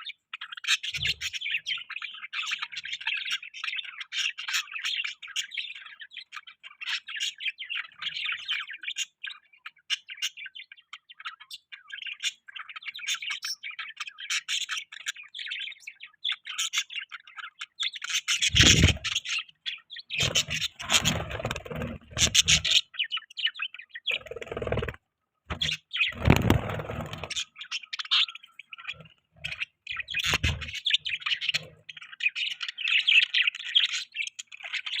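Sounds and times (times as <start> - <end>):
budgies chirping: 0.0 - 35.0
deep knocking or rustling: 25.5 - 27.4.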